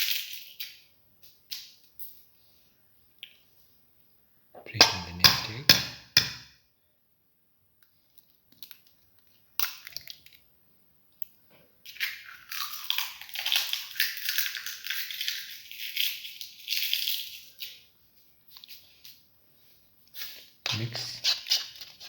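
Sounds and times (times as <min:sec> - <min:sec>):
egg cracking: 0:08.1 - 0:10.5, 0:11.8 - 0:17.9
spoon scraping and stirring in bowl: 0:20.2 - 0:22.0.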